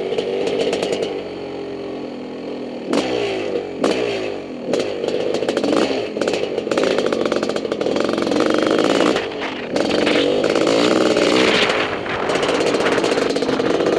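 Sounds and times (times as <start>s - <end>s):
quad bike engine revving: 0.0s - 13.9s.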